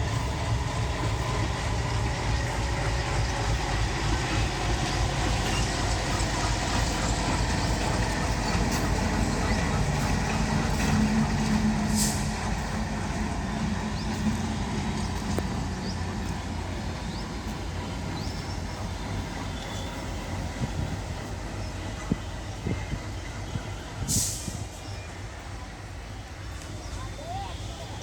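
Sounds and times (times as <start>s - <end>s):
locomotive rumbling: 0.0s - 28.0s
air hiss: 11.8s - 12.4s, 24.1s - 24.8s.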